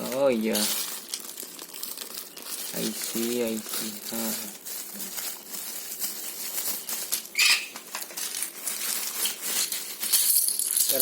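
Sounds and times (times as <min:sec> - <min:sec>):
small hard parts clicking: 0:07.0 - 0:11.0.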